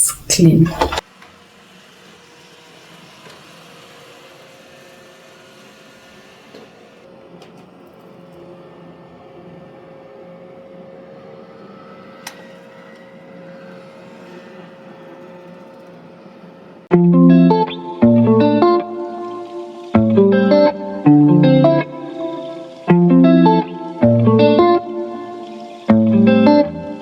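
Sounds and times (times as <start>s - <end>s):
robot vacuum motor whir: 0.8s - 16.9s.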